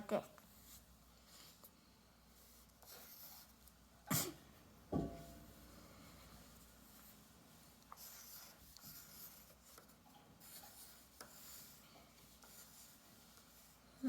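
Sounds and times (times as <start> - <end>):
pencil scratching on paper: 2.4 - 3.6, 7.9 - 13.8.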